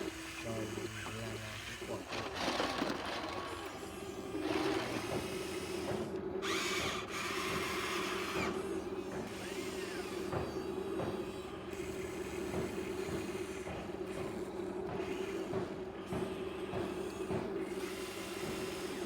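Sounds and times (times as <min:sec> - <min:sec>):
model excavator motor whining: 0:00.0 - 0:19.0.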